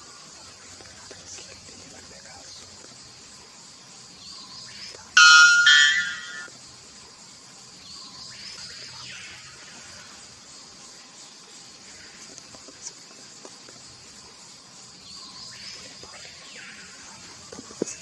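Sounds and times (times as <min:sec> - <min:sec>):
insects hissing: 0:00.0 - 0:18.0
bird giving ringing call: 0:05.2 - 0:06.5.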